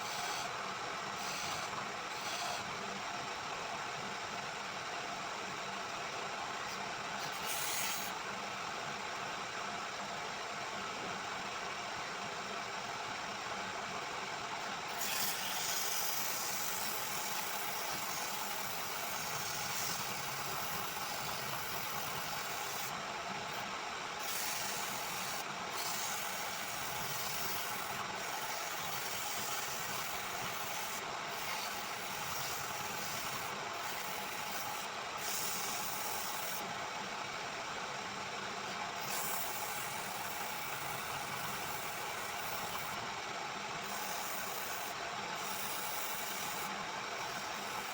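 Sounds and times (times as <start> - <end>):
woodworking machine hissing: 0.0 - 0.5, 1.1 - 2.6, 7.2 - 8.1, 14.9 - 36.7, 38.9 - 43.0, 43.8 - 47.9.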